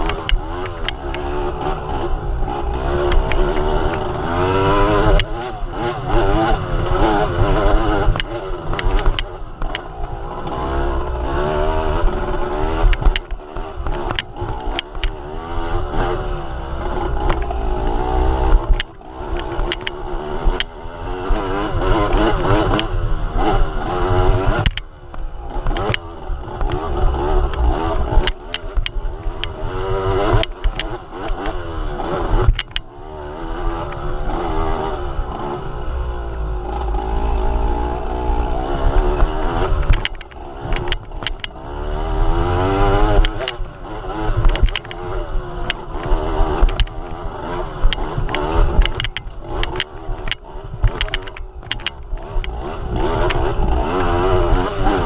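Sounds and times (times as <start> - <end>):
vehicle engine revving: 0.0 - 55.0
knocks and rattles: 7.5 - 10.6, 11.9 - 15.2, 16.8 - 20.7, 24.4 - 24.8, 25.6 - 31.6, 32.3 - 32.8, 38.8 - 41.6, 42.6 - 54.4.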